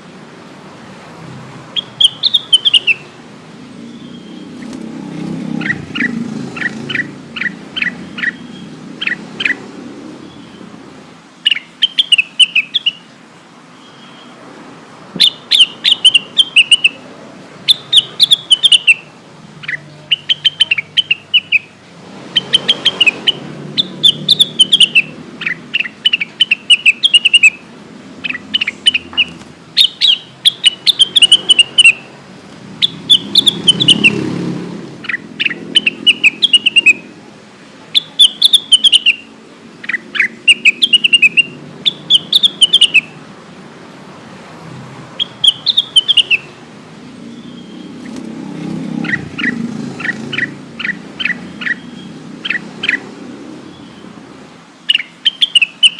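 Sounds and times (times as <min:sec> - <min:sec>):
bird singing whistled chirps: 0:01.8 - 0:03.1, 0:03.8 - 0:04.6, 0:05.6 - 0:09.6, 0:11.5 - 0:13.1, 0:13.8 - 0:14.4, 0:15.2 - 0:17.0, 0:17.7 - 0:21.7, 0:22.4 - 0:27.6, 0:28.2 - 0:32.1, 0:32.8 - 0:34.2, 0:35.0 - 0:37.1, 0:38.0 - 0:43.2, 0:45.2 - 0:46.5, 0:47.3 - 0:48.0, 0:54.9 - 0:55.9.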